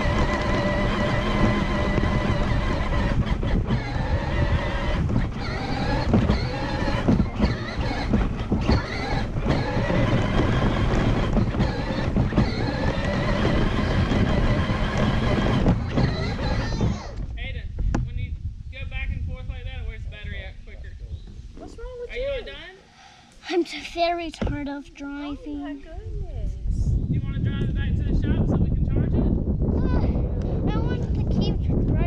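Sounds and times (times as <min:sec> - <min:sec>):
ride-on toy motor: 0:00.0 - 0:17.2
wind on microphone: 0:00.0 - 0:22.4, 0:25.3 - 0:32.0.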